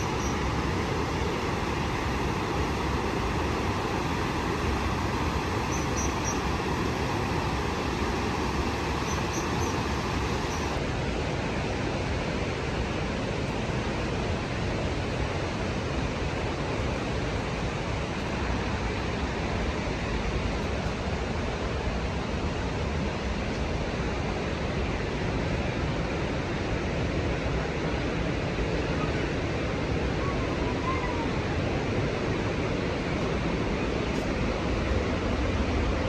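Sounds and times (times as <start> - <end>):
waterfall roaring: 0.0 - 20.5.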